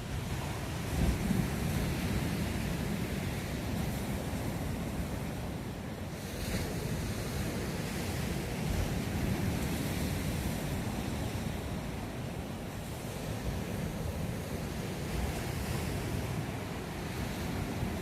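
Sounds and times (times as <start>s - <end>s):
ocean surf on a beach: 0.0s - 18.0s
wind rumble on microphone: 0.0s - 18.0s.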